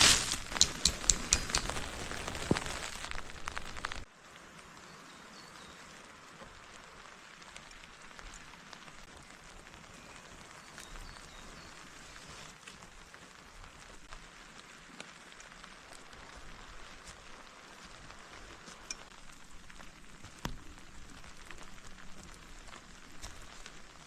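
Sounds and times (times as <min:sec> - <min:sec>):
steady rain falling: 0:00.0 - 0:24.0
raindrop ticks: 0:00.5 - 0:04.1.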